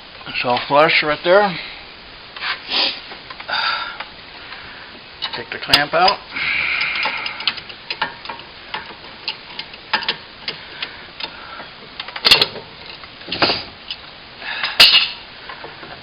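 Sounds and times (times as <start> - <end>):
small metallic clicks: 6.8 - 11.4.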